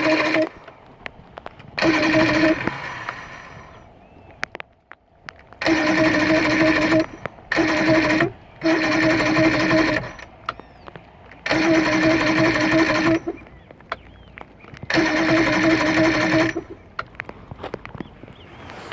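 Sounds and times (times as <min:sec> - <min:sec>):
electric starter cranking outboard motor: 0:00.0 - 0:00.9, 0:01.6 - 0:04.0, 0:05.4 - 0:14.0, 0:14.8 - 0:17.2.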